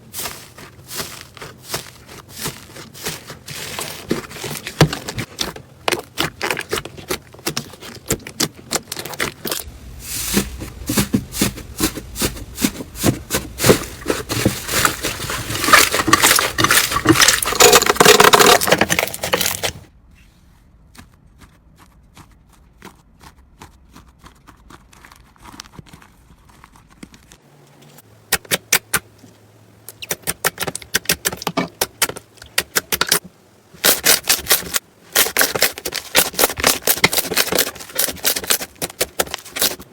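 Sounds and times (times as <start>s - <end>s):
slime crackling and popping: 0.2s - 19.8s.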